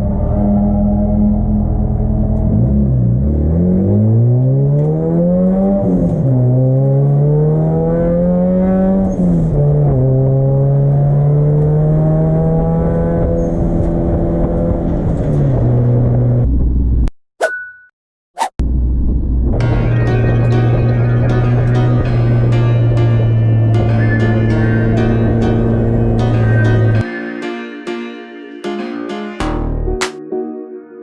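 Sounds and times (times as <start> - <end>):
race car engine accelerating: 0.0 - 16.4, 19.6 - 27.0.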